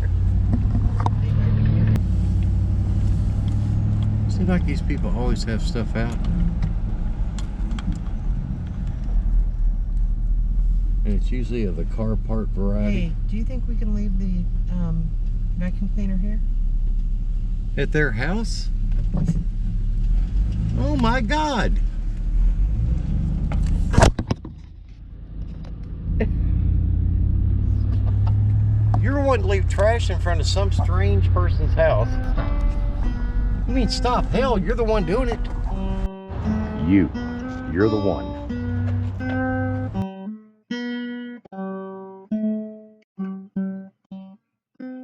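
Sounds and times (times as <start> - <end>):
truck engine rumble: 0.0 - 40.0
acoustic guitar plucked notes: 30.7 - 45.0.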